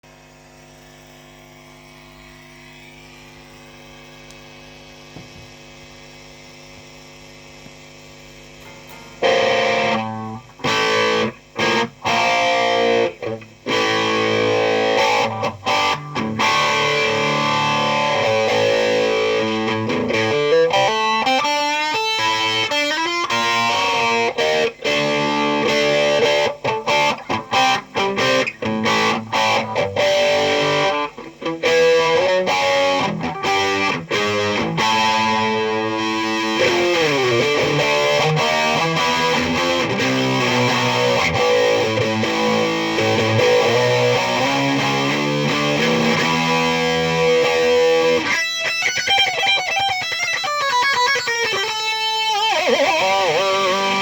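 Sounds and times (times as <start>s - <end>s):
amplifier hum: 0.0s - 48.7s
distorted electric guitar: 0.0s - 54.0s.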